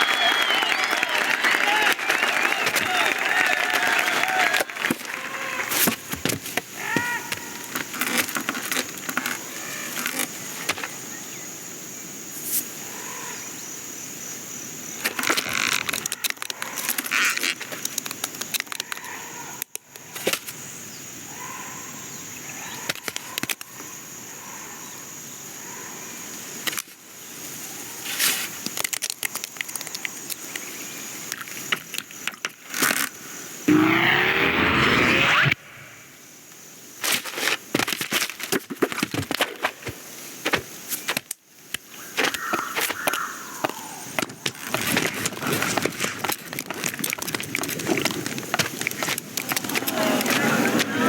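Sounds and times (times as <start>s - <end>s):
patters and rustles: 37.0s - 51.0s.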